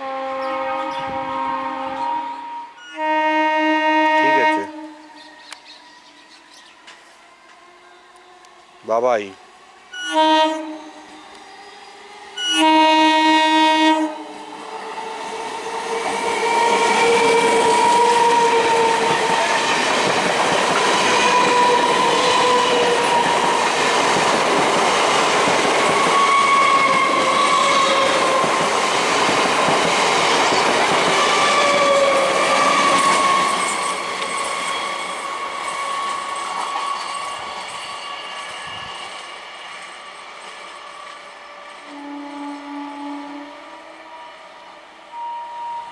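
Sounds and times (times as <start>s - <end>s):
train horn blast: 0.0s - 5.8s, 9.9s - 11.2s, 12.4s - 14.4s, 41.8s - 45.9s
train wheels clattering on rail: 14.5s - 41.9s.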